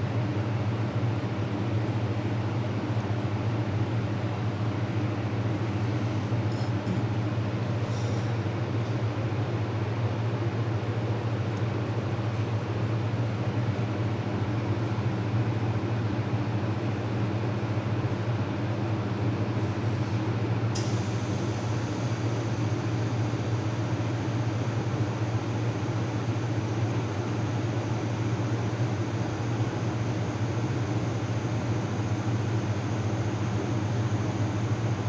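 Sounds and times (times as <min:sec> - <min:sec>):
machinery hum: 0:20.7 - 0:35.0.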